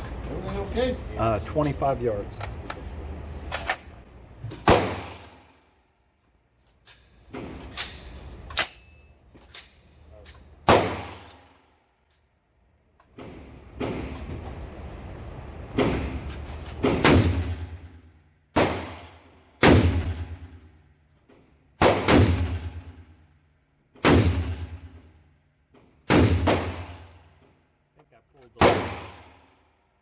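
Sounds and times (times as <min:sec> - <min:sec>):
rifle shots: 0:04.6 - 0:05.5, 0:10.7 - 0:11.3, 0:16.8 - 0:17.8, 0:18.6 - 0:20.6, 0:21.8 - 0:22.9, 0:24.0 - 0:24.8, 0:26.1 - 0:27.1, 0:28.6 - 0:29.4.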